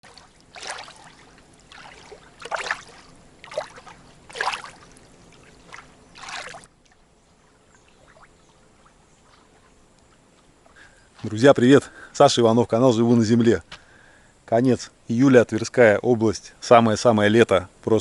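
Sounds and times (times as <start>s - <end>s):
water splashing: 0.0s - 9.7s.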